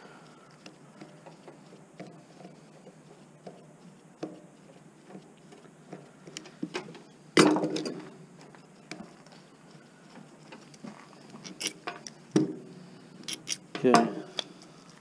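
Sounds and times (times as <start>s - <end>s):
hand tools clicking and tapping: 0.5s - 9.2s, 13.2s - 14.7s.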